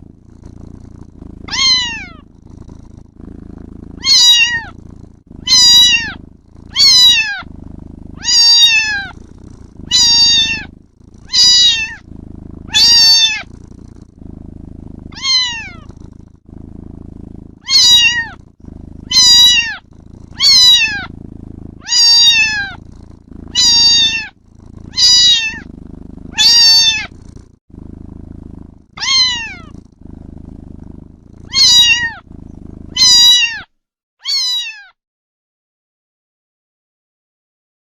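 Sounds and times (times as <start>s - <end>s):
low purr: 0.0s - 35.0s
kitten meowing: 1.5s - 2.2s, 4.0s - 4.7s, 5.4s - 7.5s, 8.2s - 9.1s, 9.9s - 12.0s, 12.7s - 13.5s, 15.1s - 15.9s, 17.6s - 18.4s, 19.1s - 19.8s, 20.4s - 21.1s, 21.8s - 22.8s, 23.5s - 25.7s, 26.3s - 27.1s, 29.0s - 29.7s, 31.5s - 32.2s, 32.9s - 35.0s.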